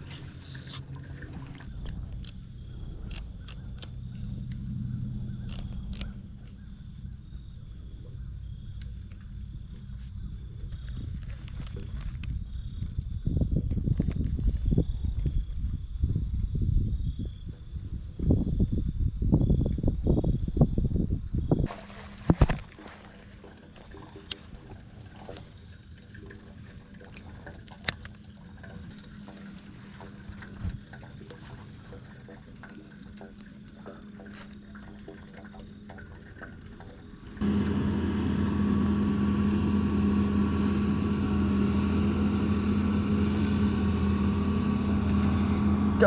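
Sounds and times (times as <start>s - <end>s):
combine harvester engine hum: 0.0s - 15.2s, 21.7s - 46.0s
light clicks: 3.1s - 4.6s, 5.4s - 6.6s.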